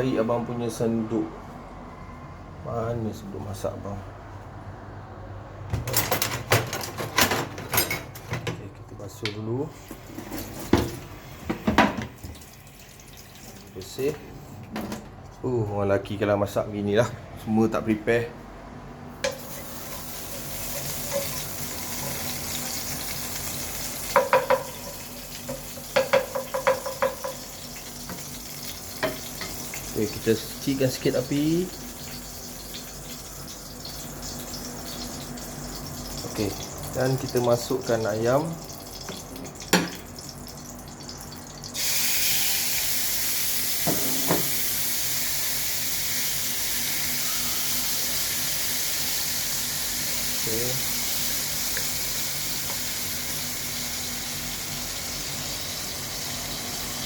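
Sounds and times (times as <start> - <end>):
hot oil sizzling in a wok: 19.3 - 37.8, 38.4 - 57.0.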